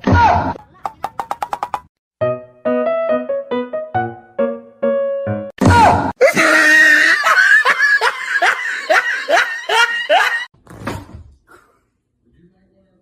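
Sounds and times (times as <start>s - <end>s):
person laughing loudly: 6.2s - 10.5s.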